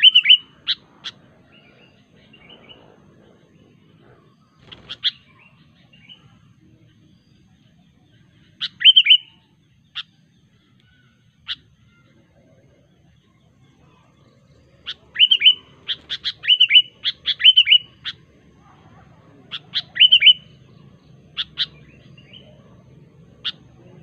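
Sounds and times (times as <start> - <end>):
bird calling sharp notes: 0.0 - 1.2, 4.6 - 5.6, 8.5 - 10.2, 14.8 - 18.3, 19.5 - 20.6, 21.3 - 22.4.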